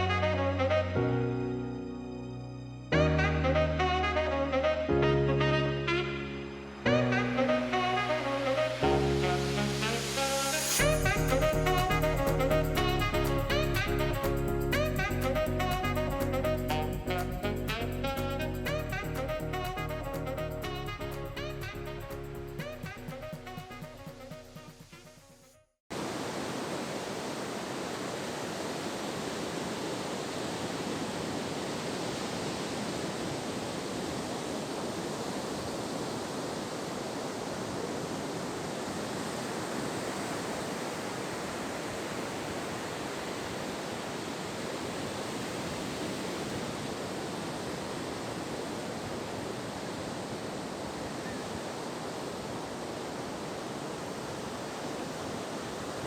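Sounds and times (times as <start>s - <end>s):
ocean surf on a beach: 0.0s - 1.8s, 5.9s - 12.0s, 25.9s - 56.0s.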